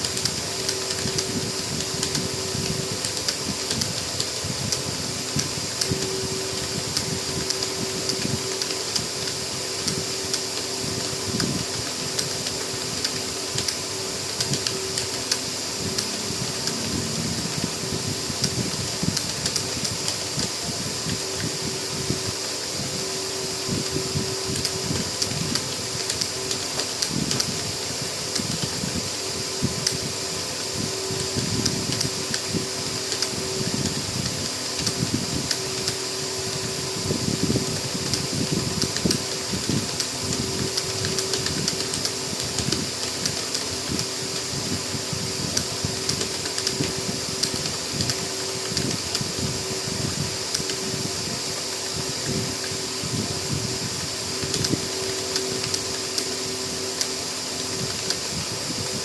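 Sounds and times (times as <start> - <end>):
fast keyboard typing: 0.0 - 22.3, 23.8 - 28.8, 37.2 - 44.7, 45.5 - 51.1, 53.6 - 58.4
fan humming: 0.0 - 59.0.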